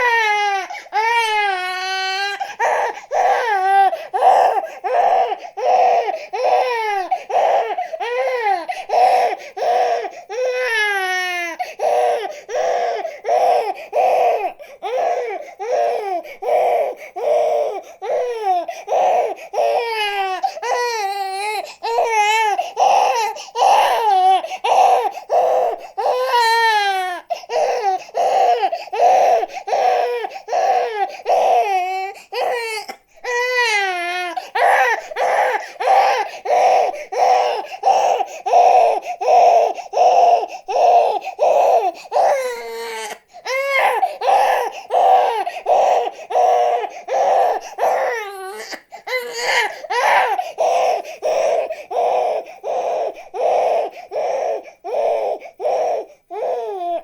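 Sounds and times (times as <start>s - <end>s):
infant crying: 0.0s - 57.0s.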